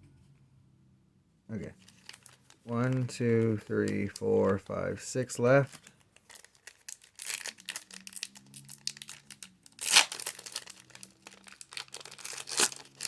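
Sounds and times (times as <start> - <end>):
foil wrapper crinkling: 1.7 - 13.0
foil wrapper ripping: 1.8 - 4.6, 5.6 - 13.0.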